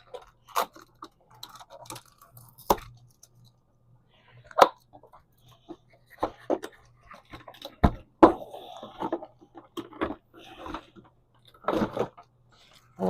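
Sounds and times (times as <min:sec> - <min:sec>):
cardboard rustling and scraping: 0:08.9 - 0:13.0.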